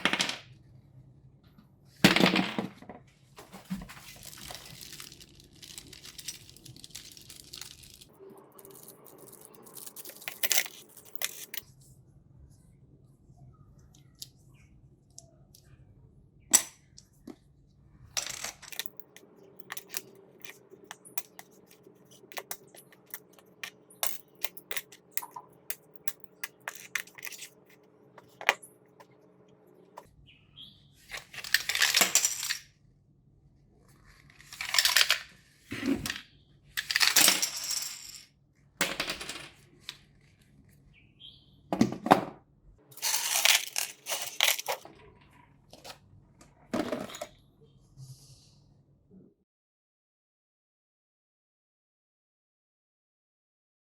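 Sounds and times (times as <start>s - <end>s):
crinkling rustle: 3.4s - 11.6s.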